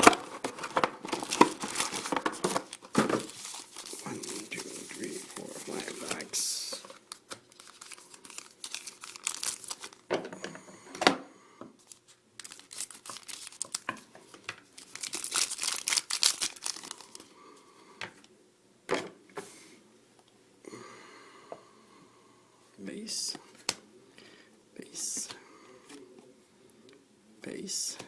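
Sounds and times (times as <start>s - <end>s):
plastic wrappers tearing and crinkling: 0.0s - 10.0s, 11.8s - 14.1s, 14.7s - 17.3s.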